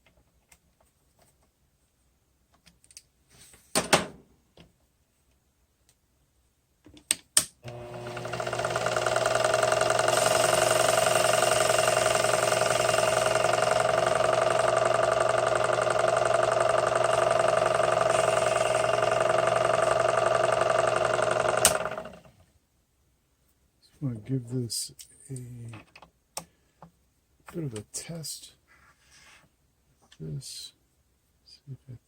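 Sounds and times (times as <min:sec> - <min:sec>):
lathe motor whining: 0:07.7 - 0:22.3.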